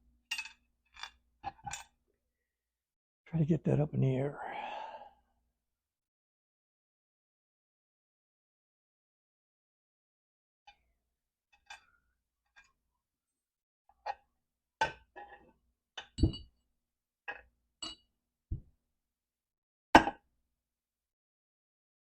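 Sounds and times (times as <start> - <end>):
metal parts and tools clinking: 0.3 - 2.0.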